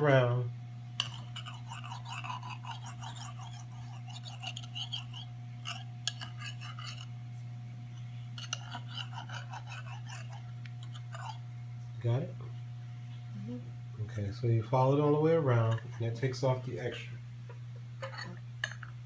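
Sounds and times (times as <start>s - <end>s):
knife scraping glass dish: 1.0s - 7.1s, 8.4s - 11.4s, 18.0s - 18.8s.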